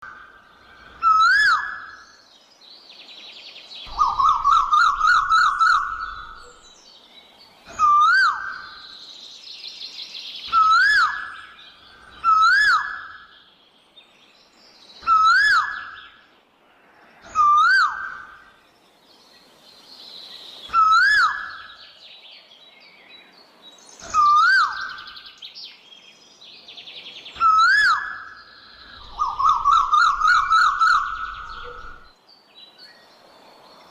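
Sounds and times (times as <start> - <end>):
small birds chirping: 0.0 - 33.9
koel calling: 3.9 - 6.5, 29.0 - 32.1.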